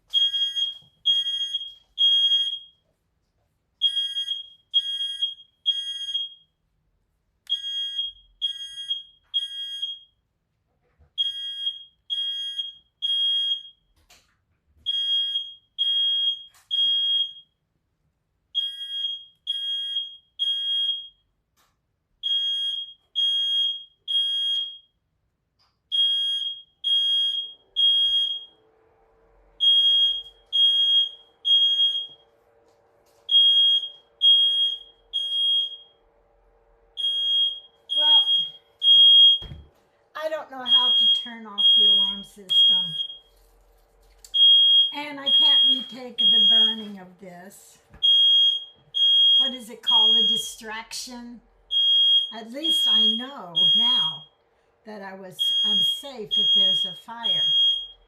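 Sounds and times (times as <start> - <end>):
smoke alarm beeping: 0.0 - 2.8, 3.8 - 6.5, 7.5 - 10.2, 11.2 - 13.9, 14.8 - 17.6, 18.5 - 21.3, 22.2 - 25.0, 25.9 - 28.5, 29.6 - 32.4, 33.1 - 36.0, 37.0 - 43.5, 44.3 - 47.0, 48.0 - 51.1, 51.7 - 54.4, 55.4 - 58.0.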